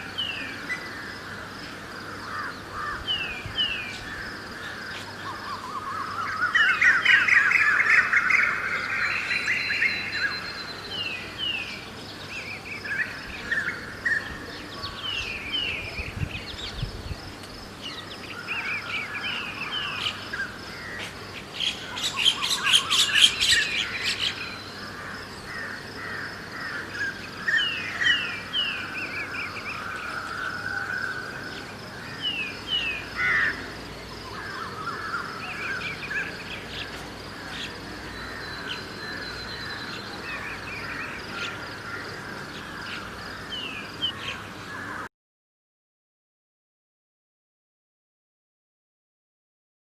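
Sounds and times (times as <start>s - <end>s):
birds chirping and calling: 0.0s - 45.1s.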